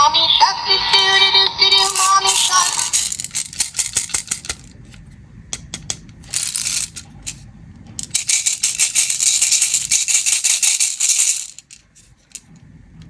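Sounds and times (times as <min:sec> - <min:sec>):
faint children's song: 0:00.0 - 0:03.0
candy packaging rattling and crinkling: 0:01.7 - 0:04.8, 0:06.2 - 0:07.4, 0:08.0 - 0:12.5.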